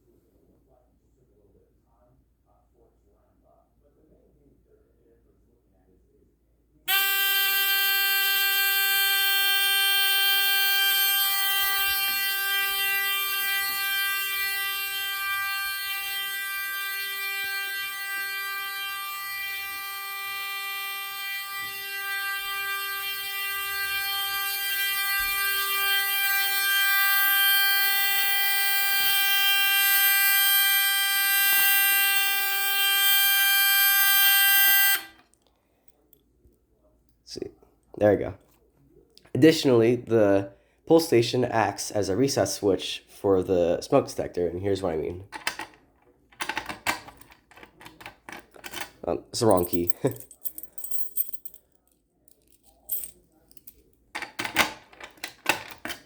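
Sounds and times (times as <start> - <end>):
fire alarm panel buzzer: 6.9 - 35.2.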